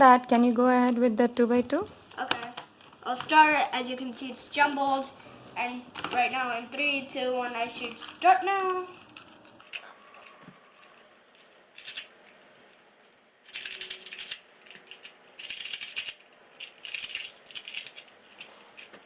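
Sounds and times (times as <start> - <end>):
puzzle cube clicking and rattling: 9.0 - 12.8, 13.4 - 19.0.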